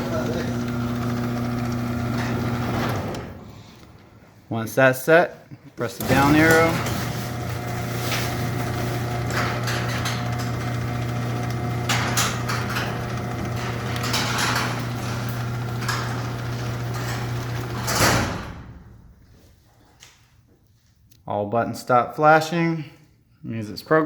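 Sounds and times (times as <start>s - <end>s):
door rollers rattling and clicking: 0.0s - 4.2s, 6.0s - 19.2s
garage door opener motor humming: 0.0s - 4.3s, 6.0s - 19.3s.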